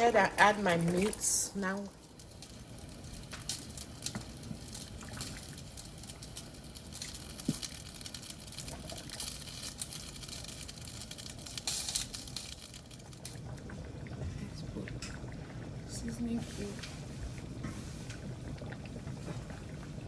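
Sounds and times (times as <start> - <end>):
soup bubbling in a pot: 0.0 - 20.0
small pops and ticks: 2.1 - 14.3.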